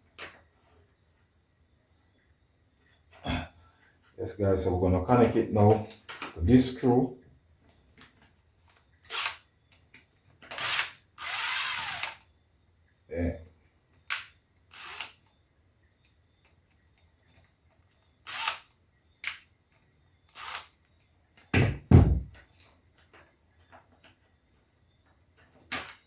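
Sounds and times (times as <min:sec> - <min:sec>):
screwdriver scraping and clicking: 0:18.0 - 0:19.4, 0:20.3 - 0:21.0
heavy knocks: 0:21.6 - 0:22.3.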